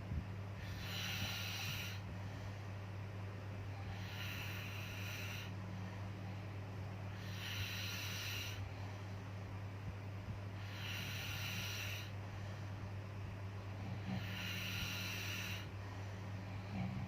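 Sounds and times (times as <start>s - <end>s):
steady low hum: 0.0s - 17.0s
snoring breaths: 0.6s - 2.7s, 3.6s - 6.1s, 7.1s - 9.2s, 10.6s - 12.8s, 13.6s - 17.0s.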